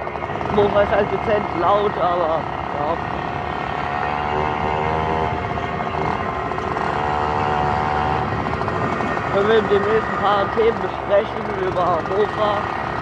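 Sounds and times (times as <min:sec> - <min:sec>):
moped two-stroke engine whining: 0:00.0 - 0:13.0.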